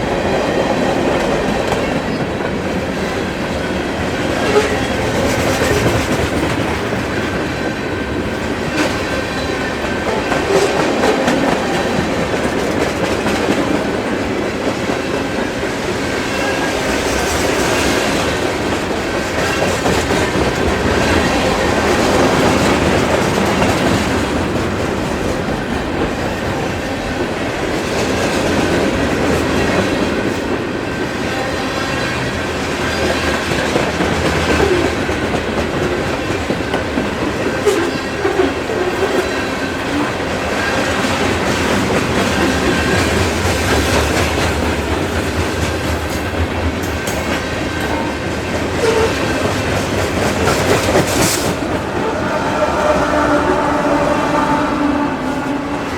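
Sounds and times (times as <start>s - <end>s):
train wheels clicking over rail joints: 0.0s - 52.2s
faint wheel squeal on rails: 48.8s - 49.5s.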